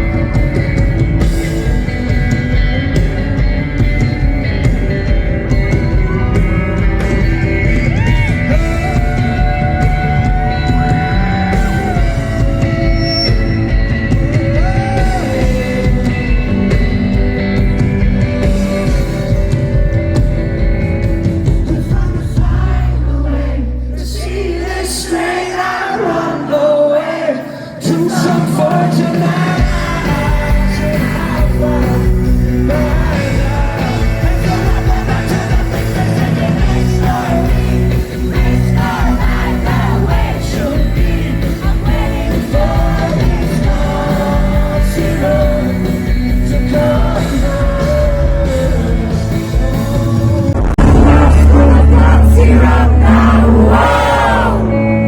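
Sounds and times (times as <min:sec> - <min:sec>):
live rock band: 0:00.0 - 0:55.0
lead vocal singing: 0:05.4 - 0:19.9, 0:21.4 - 0:55.0.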